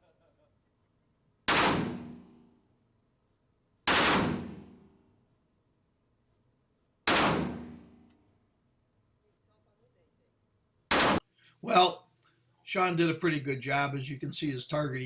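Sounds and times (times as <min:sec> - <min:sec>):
gunshots: 0:01.5 - 0:02.4, 0:03.8 - 0:04.9, 0:07.0 - 0:08.0, 0:10.9 - 0:11.2.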